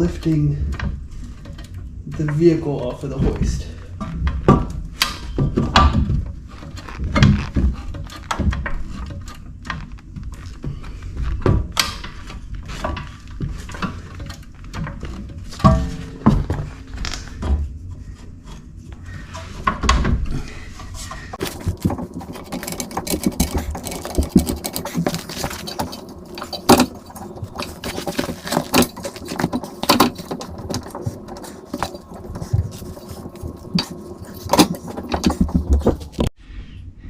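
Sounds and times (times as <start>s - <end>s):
metallic clicks and clanks of tools: 21.4s - 36.3s.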